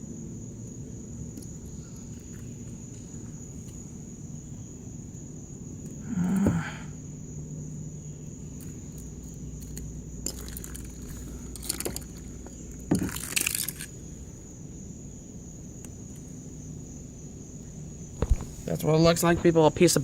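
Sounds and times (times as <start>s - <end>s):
crickets chirring: 0.0s - 20.0s
crunching rattle: 8.5s - 14.4s, 18.1s - 19.6s.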